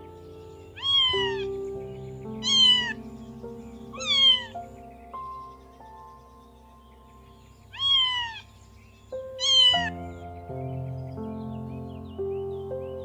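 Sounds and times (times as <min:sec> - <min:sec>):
background music with held notes: 0:00.0 - 0:13.0
cat meowing: 0:00.8 - 0:01.5, 0:02.4 - 0:03.0, 0:04.0 - 0:04.6, 0:07.7 - 0:08.5, 0:09.4 - 0:10.0.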